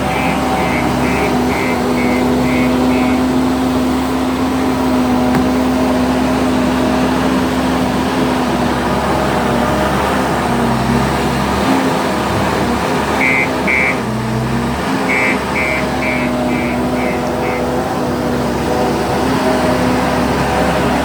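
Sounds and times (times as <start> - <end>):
reversing alarm beeps: 0.0 - 3.3, 13.2 - 14.0, 15.1 - 17.7
diesel engine under load: 0.0 - 21.0.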